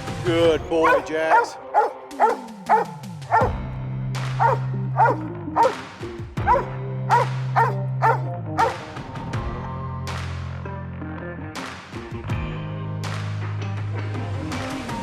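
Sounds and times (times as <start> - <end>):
dog barking: 0.8 - 3.6, 4.4 - 5.8, 6.5 - 8.9.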